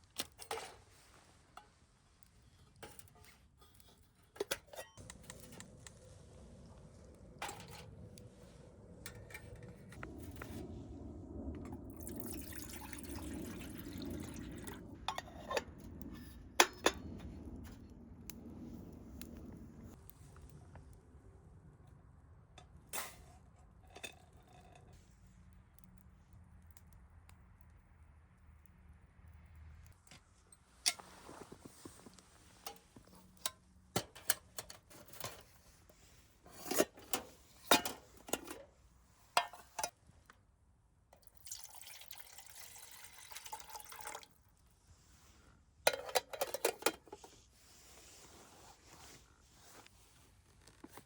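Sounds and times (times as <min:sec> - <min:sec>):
water being poured: 0:11.5 - 0:15.8, 0:41.2 - 0:44.4
metal cookware clinking: 0:36.5 - 0:38.6, 0:39.4 - 0:39.9, 0:45.9 - 0:47.3.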